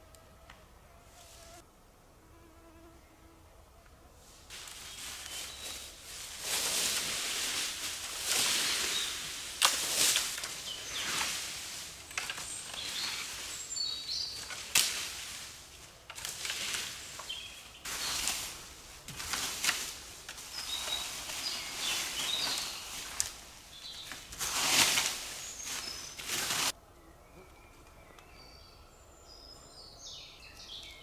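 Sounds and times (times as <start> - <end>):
rustling noise: 4.2 - 26.8
small birds chirping: 4.7 - 6.9, 7.6 - 15.1, 16.9 - 18.6, 20.4 - 31.0.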